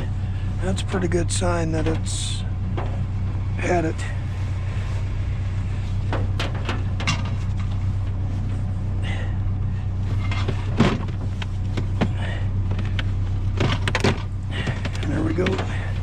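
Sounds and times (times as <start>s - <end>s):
steady low hum: 0.0s - 16.0s
scrap metal clunking: 4.1s - 8.7s.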